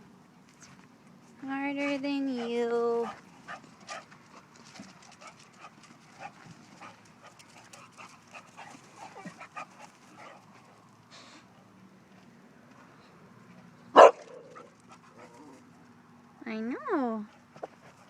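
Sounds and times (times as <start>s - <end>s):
dog panting and whimpering: 1.8s - 4.4s, 5.1s - 10.7s, 17.4s - 18.0s.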